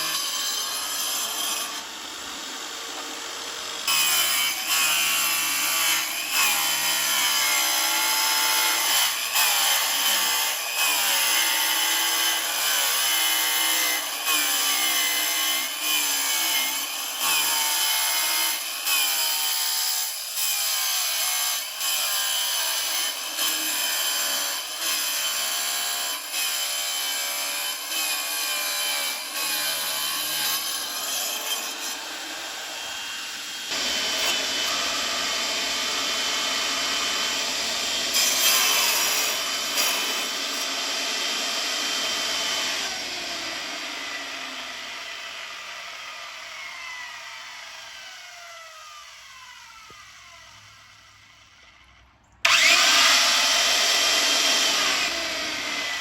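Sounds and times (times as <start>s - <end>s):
squealing sawing strokes: 52.4s - 56.0s.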